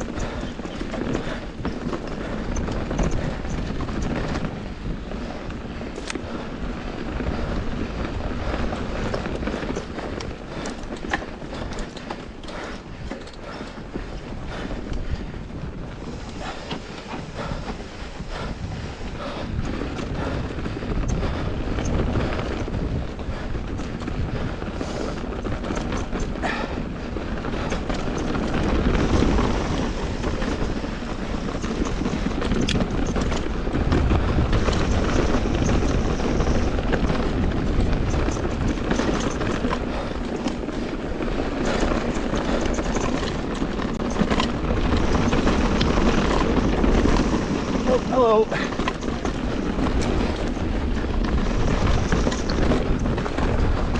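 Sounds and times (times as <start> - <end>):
bike knocking and rattling: 0.0 - 53.9
wind rushing over microphone: 0.0 - 53.9
tyres crunching over stones: 26.0 - 53.9.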